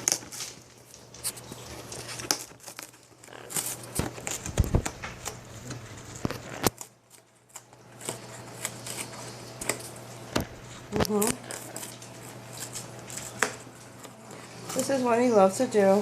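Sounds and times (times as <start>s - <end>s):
parrot chewing cardboard: 0.0s - 15.6s
steady low hum: 0.0s - 16.0s.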